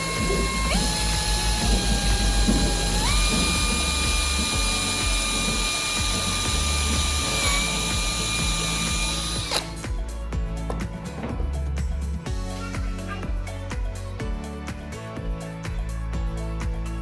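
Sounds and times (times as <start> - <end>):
power tool motor whine: 0.0 - 10.0
background music: 0.0 - 17.0.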